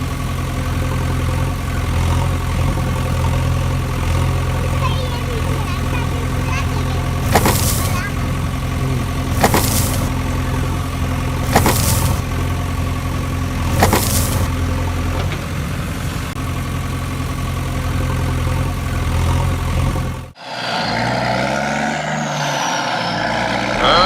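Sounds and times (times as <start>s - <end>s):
heavy vehicle engine running: 0.0s - 24.0s.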